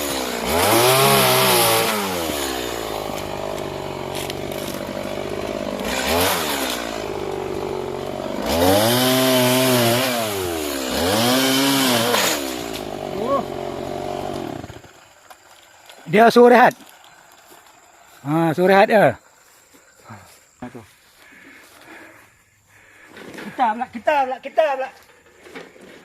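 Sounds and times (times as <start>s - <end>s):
chainsaw revving: 0.0s - 18.7s.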